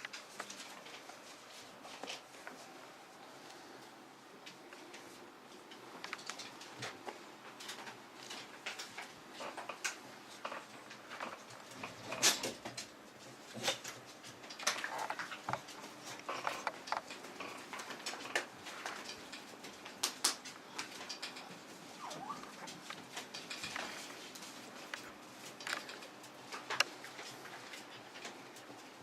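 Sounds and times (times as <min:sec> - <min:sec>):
animal squeaky calls: 0:22.0 - 0:22.6.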